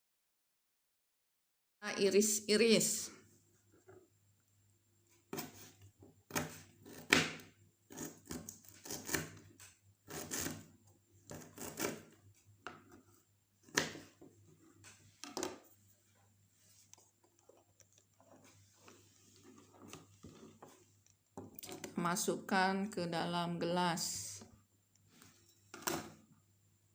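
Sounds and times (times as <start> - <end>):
knife slicing on cutting board: 7.9 - 9.4, 11.3 - 12.1.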